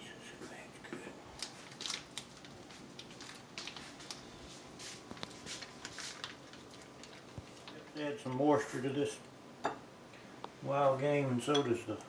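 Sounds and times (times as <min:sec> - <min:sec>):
hands handling raw meat: 0:01.4 - 0:07.9.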